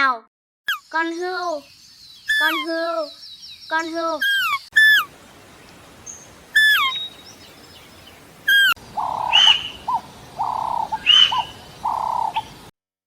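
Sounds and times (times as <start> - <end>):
warbling chirping animal calls: 4.2 - 12.7
high falling whistled deer call: 4.3 - 12.6.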